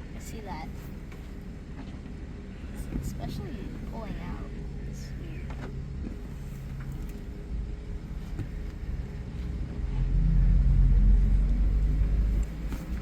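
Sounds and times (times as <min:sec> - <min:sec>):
truck engine and road rumble: 0:00.0 - 0:13.0.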